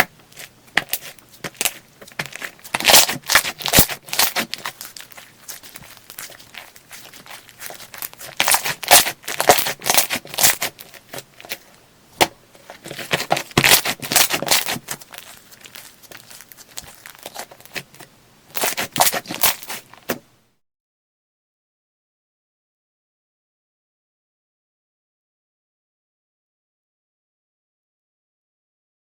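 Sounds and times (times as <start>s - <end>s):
slime squished crackling and popping: 0.0s - 11.6s, 12.8s - 20.2s.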